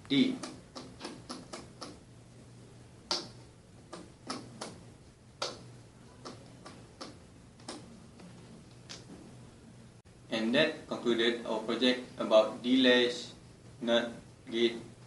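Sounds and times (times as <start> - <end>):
faint steady hum: 0.0 - 15.0
small switches clicking: 0.4 - 2.0, 5.4 - 7.9.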